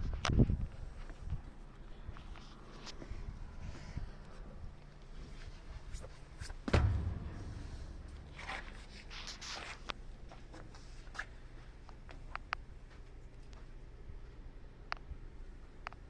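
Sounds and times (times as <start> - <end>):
heavy thump: 6.7 - 9.5.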